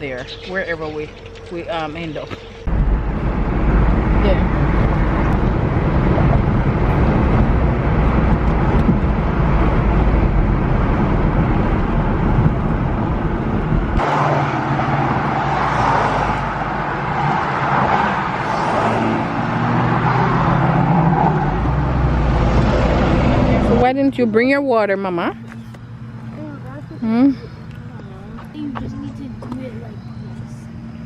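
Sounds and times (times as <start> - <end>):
car road noise rumble: 0.0 - 31.0.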